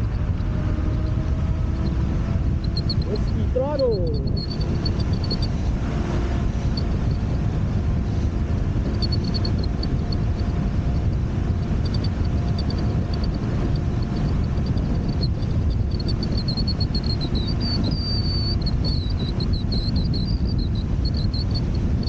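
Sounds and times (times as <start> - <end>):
road rumble: 0.0 - 22.0
wind buffeting: 0.0 - 22.0.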